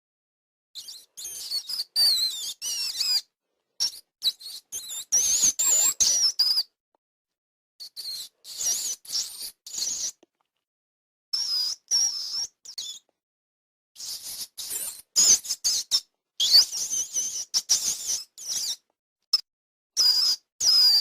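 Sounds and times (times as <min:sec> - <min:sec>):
rat squeaking: 0:00.8 - 0:06.7, 0:07.8 - 0:10.2, 0:11.4 - 0:13.1, 0:14.0 - 0:18.8, 0:20.0 - 0:21.0.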